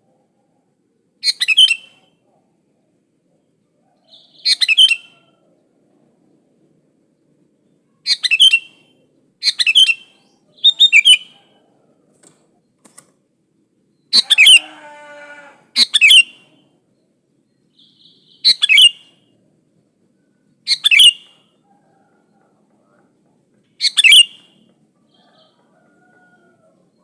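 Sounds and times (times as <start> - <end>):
bird bubbly whistled phrases: 20.7 - 21.3, 23.8 - 24.5.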